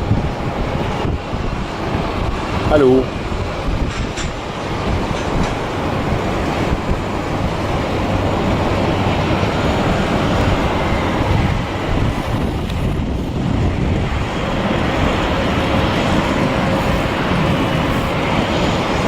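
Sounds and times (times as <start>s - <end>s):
heavy machinery roar: 0.0s - 19.0s.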